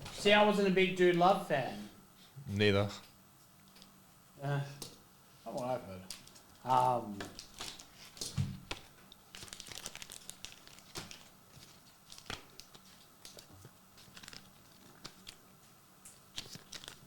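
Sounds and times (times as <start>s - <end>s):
wrappers tearing and crinkling: 6.0s - 15.5s, 16.3s - 17.0s.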